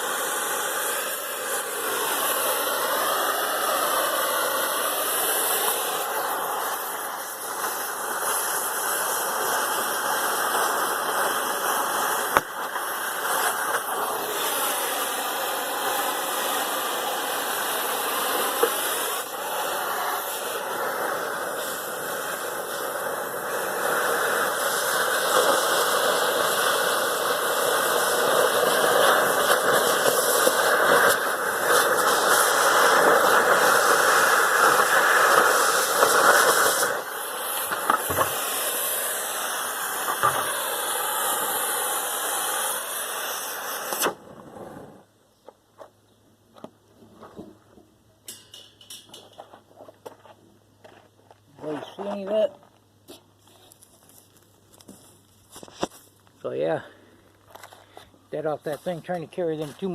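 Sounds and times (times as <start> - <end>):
cutting torch hissing: 0.0 - 45.1, 57.6 - 59.9.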